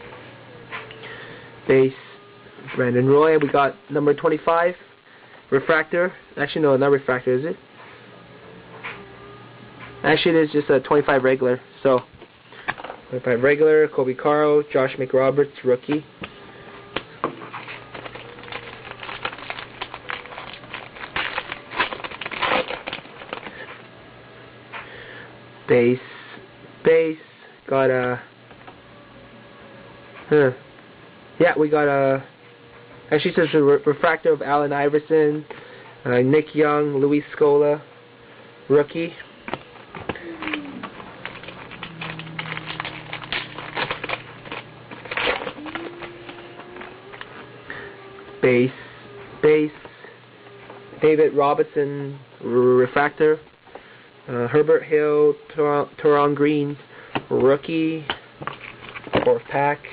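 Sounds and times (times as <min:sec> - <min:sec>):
cards being handled: 0:15.9 - 0:23.8, 0:39.4 - 0:48.4, 0:58.1 - 0:59.4
wrapper tearing and crinkling: 0:17.6 - 0:23.6, 0:40.1 - 0:47.3.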